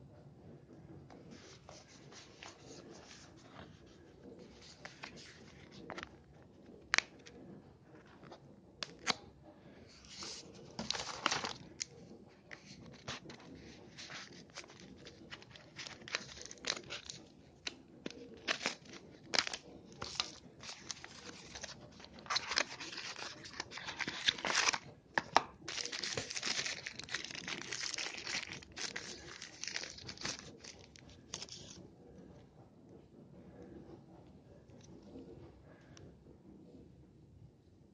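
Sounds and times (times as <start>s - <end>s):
wrapping crinkling and tearing: 10.1s - 11.9s, 12.6s - 31.8s.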